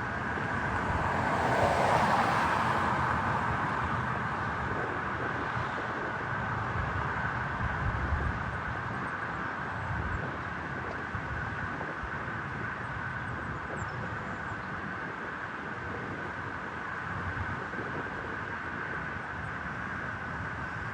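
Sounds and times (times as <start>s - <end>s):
airplane landing noise: 0.0s - 6.1s.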